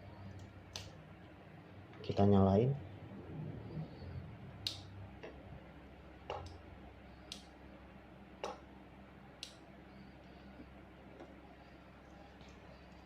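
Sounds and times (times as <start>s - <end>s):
sharp switch clicks: 4.6s - 4.9s, 7.3s - 7.5s.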